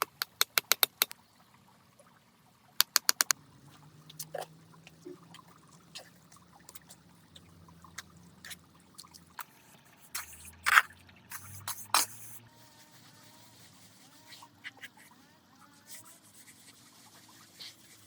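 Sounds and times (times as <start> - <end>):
water dripping and trickling: 0.0 - 12.5, 13.7 - 18.0
water splashes: 1.7 - 12.5.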